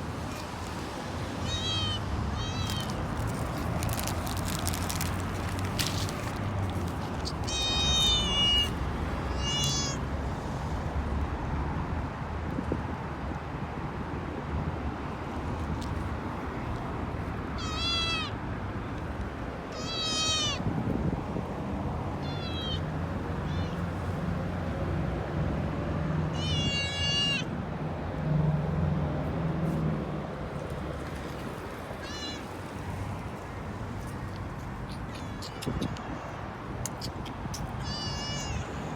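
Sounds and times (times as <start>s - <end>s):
kitten meowing: 1.4s - 3.4s, 7.2s - 10.0s, 17.6s - 18.3s, 19.8s - 20.6s, 22.2s - 23.9s, 26.4s - 27.5s, 37.6s - 38.7s.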